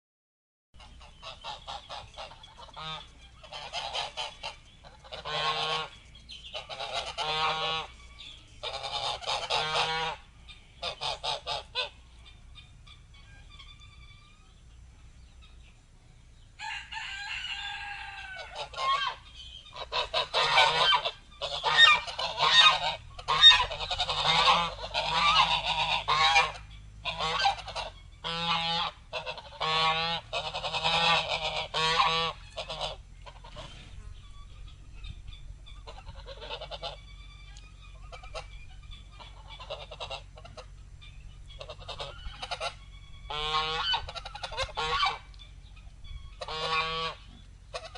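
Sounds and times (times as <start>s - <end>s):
geese honking: 0.8s - 47.9s.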